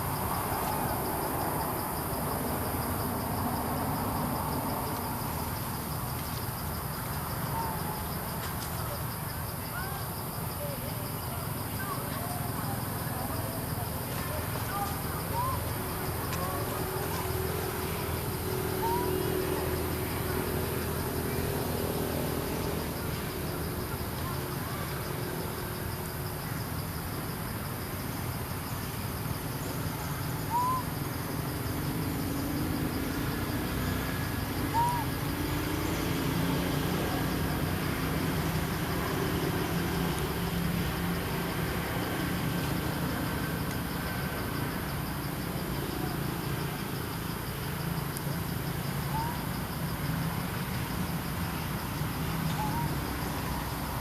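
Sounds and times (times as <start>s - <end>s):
monkey coo calls: 18.7s - 19.7s, 30.5s - 31.0s, 34.6s - 35.3s, 49.0s - 49.4s, 52.5s - 53.1s.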